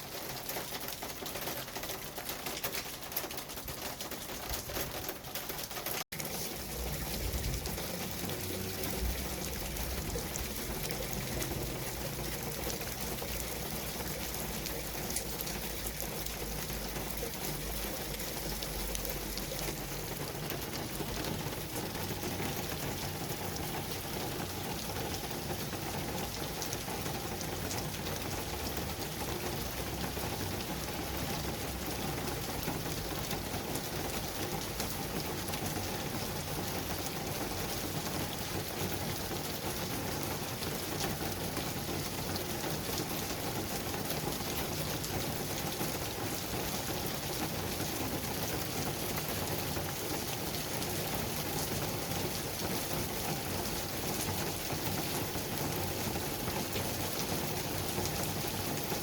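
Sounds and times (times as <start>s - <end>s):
steady rain pattering: 0.0s - 59.0s.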